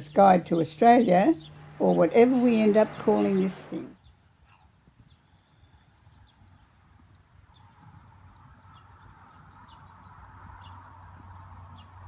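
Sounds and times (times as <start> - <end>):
low steady hum: 0.0 - 4.4.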